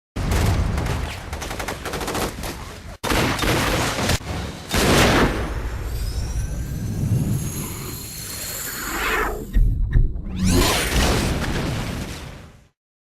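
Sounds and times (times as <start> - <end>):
rapid gunfire: 0.2 - 5.4.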